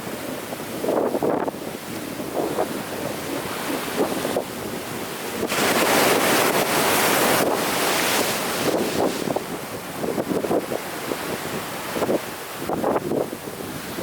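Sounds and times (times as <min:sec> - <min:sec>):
whitewater rushing: 0:00.0 - 0:13.0
ocean waves breaking: 0:00.0 - 0:14.0.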